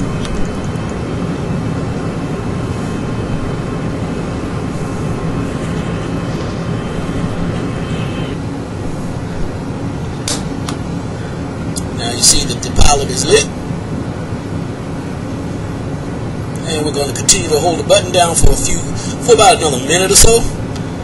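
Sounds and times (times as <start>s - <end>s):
low rumble: 0.0s - 10.2s.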